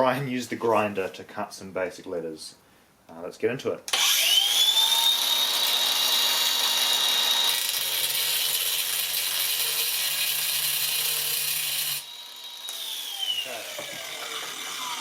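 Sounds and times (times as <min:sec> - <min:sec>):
electric grinder whining: 0:03.9 - 0:15.0.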